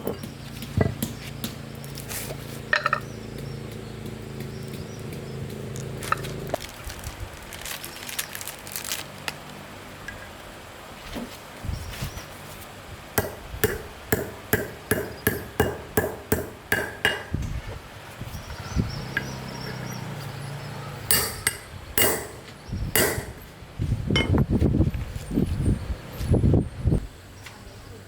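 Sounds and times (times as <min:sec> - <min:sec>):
hammer strikes: 0:13.2 - 0:17.4, 0:21.1 - 0:23.5.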